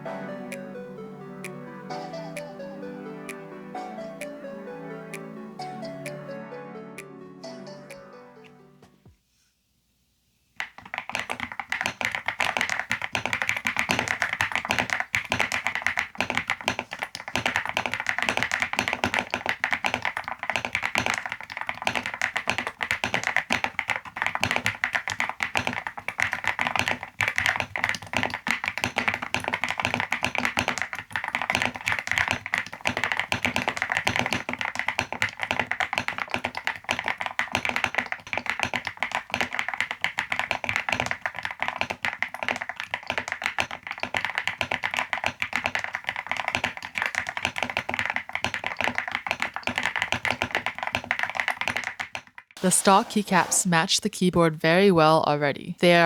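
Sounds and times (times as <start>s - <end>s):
fast typing on mechanical keyboard: 10.6s - 53.6s.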